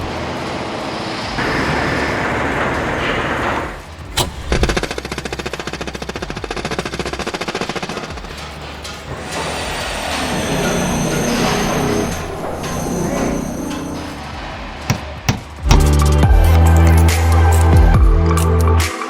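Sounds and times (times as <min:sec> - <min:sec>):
power hammer striking rapidly: 0:00.0 - 0:14.4.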